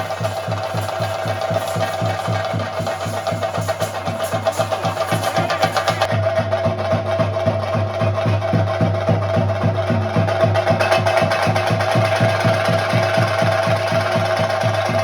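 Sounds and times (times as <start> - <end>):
steady ringing tone: 0.0 - 6.1
drums beating a fast rhythm: 0.0 - 15.0.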